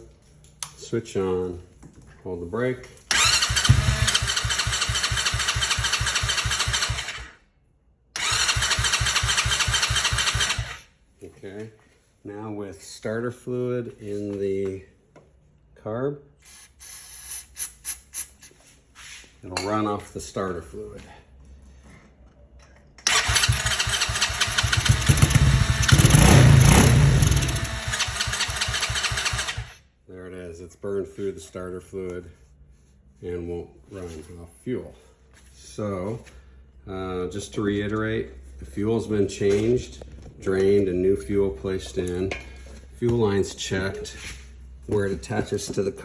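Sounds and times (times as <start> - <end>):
electric starter cranking engine: 3.1 - 7.4, 8.2 - 10.9, 23.0 - 29.8.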